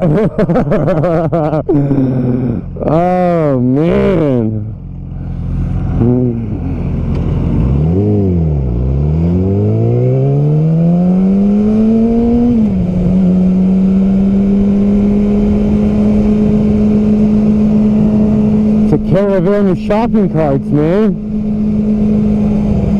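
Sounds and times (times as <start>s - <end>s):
motorcycle engine revving: 0.0s - 22.9s.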